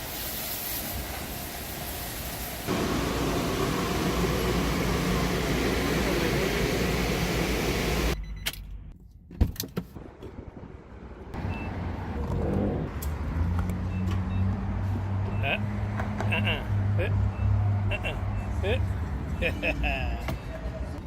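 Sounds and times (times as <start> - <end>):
wind or road noise: 0.0 - 8.2, 8.9 - 21.0
car running with low hum: 2.7 - 8.4.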